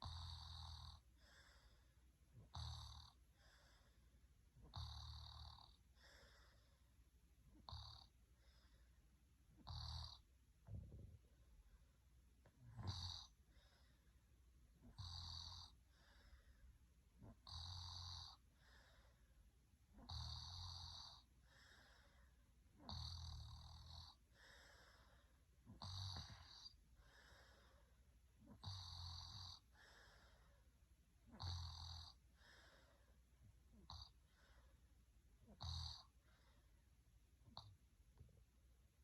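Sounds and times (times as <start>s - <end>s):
soft breath out: 1.2s - 2.0s, 6.0s - 7.0s, 15.9s - 16.8s, 21.4s - 22.4s, 24.3s - 25.4s, 26.2s - 28.0s, 32.3s - 33.2s, 34.1s - 34.9s
person snoring: 12.6s - 13.3s, 24.9s - 26.8s.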